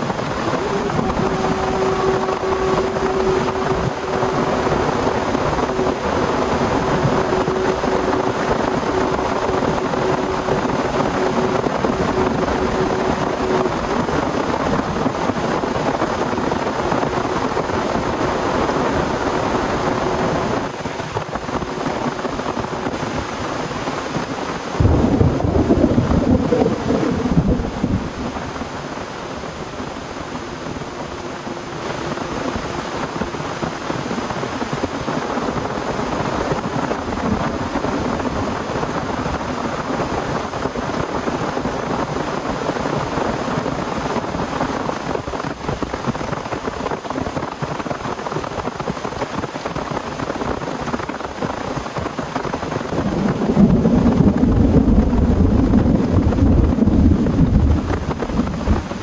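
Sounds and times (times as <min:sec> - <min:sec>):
low rumble of thunder: 0:00.0 - 0:23.7, 0:24.7 - 0:46.8, 0:52.7 - 0:59.0
heavy rain falling: 0:00.0 - 0:59.0.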